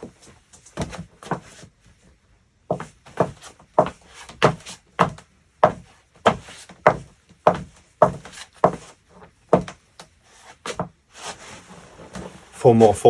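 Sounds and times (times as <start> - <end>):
footsteps on wood: 2.7 - 12.4.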